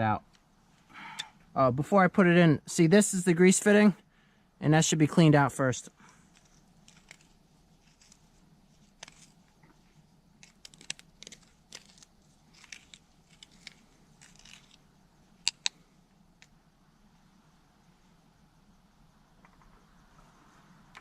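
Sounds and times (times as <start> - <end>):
sharp clicks: 15.4 - 15.8.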